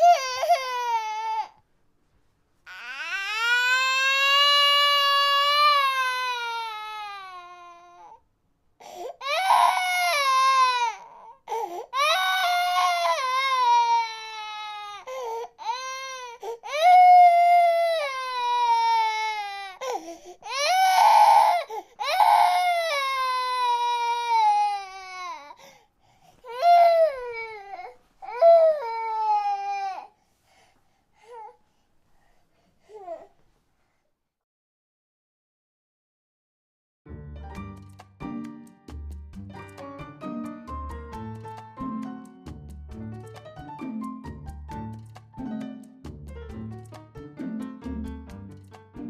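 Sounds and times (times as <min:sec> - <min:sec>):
infant crying: 0:00.0 - 0:01.6, 0:02.7 - 0:08.2, 0:08.8 - 0:25.7, 0:26.4 - 0:30.2, 0:32.9 - 0:33.3.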